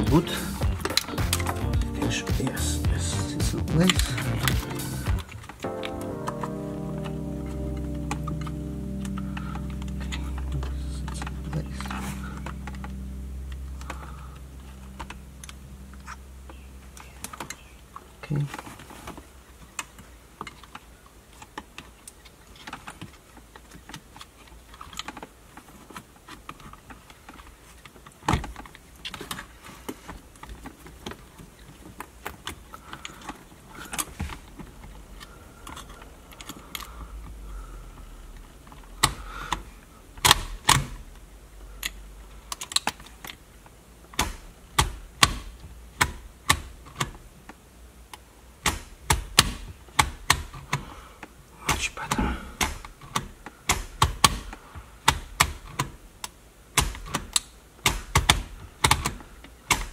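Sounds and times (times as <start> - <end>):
small plastic and metal parts clicking: 19.6 - 37.0, 41.8 - 45.4.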